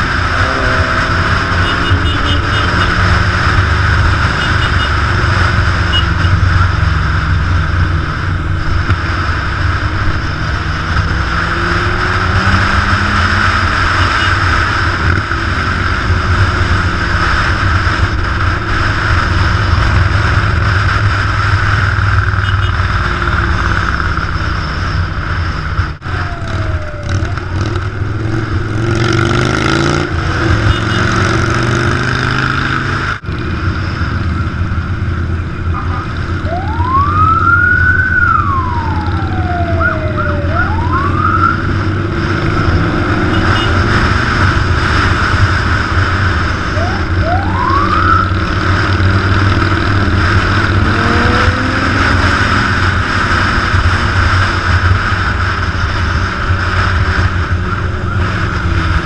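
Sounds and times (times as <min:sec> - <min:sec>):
motorcycle engines running: 0:00.0 - 0:59.0
siren wailing: 0:25.9 - 0:28.7, 0:35.6 - 0:44.5, 0:46.3 - 0:49.1.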